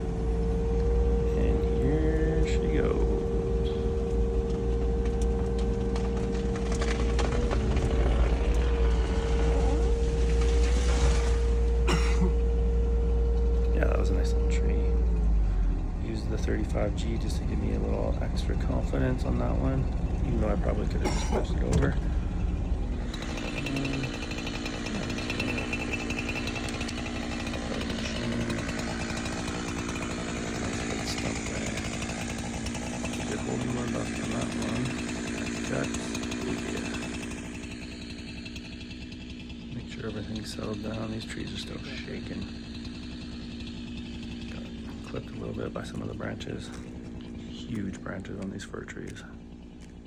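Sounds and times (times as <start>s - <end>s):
chainsaw running under load: 0.0s - 50.0s
excavator engine whining: 0.0s - 50.0s
wood cracking and snapping: 0.0s - 50.0s
branches crashing: 2.6s - 40.9s.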